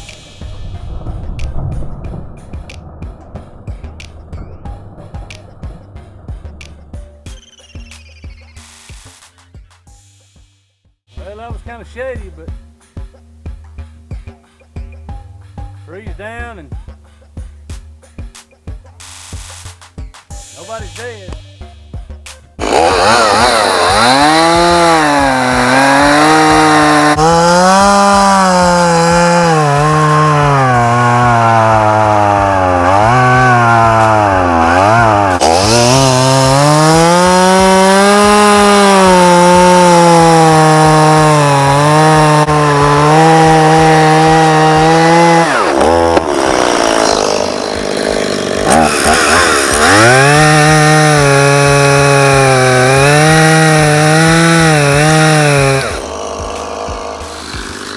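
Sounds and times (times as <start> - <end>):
chainsaw cutting wood: 22.6 - 57.9.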